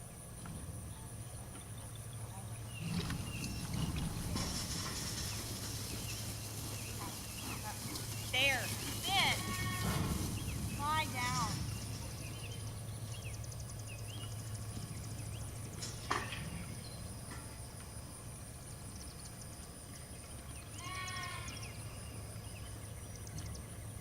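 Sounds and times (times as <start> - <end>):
sheep pen background: 0.0 - 24.0
sheep bleating: 9.0 - 10.2, 20.8 - 21.6.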